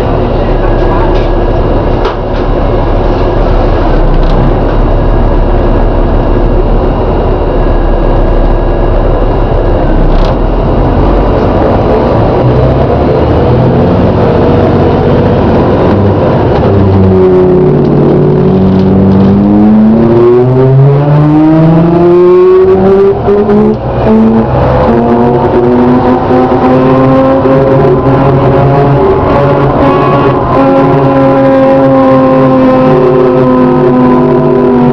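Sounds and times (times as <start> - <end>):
bus engine running: 0.0 - 34.9
groaning noise: 0.0 - 34.9
pitched tones sliding: 16.8 - 34.7.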